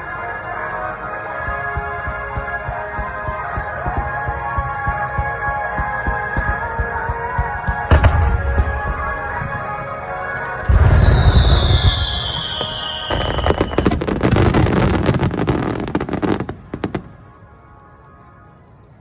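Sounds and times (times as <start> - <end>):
music: 0.0 - 19.0
falling firework whistle: 10.7 - 17.2
firework crackling and pops: 10.7 - 19.0.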